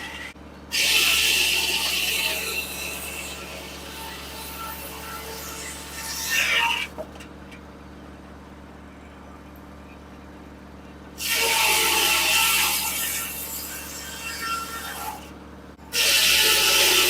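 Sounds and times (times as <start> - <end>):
saw rasping through log: 0.0 - 7.0, 11.2 - 15.3, 15.9 - 17.0
sawmill humming: 0.0 - 17.0.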